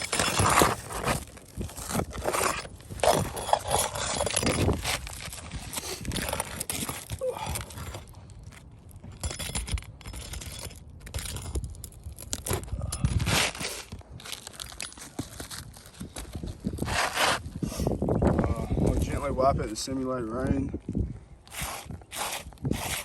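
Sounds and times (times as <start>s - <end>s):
roof shingles scraping and rustling: 0.0s - 7.2s.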